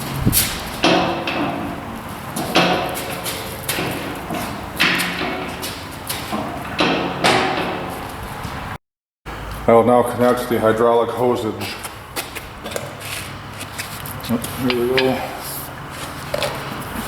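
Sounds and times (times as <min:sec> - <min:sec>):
sharp metal clanks: 0:00.8 - 0:08.2, 0:14.6 - 0:15.5.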